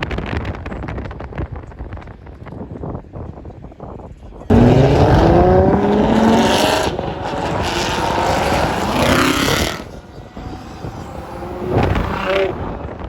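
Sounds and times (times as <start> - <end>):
car engine revving: 4.5 - 13.0.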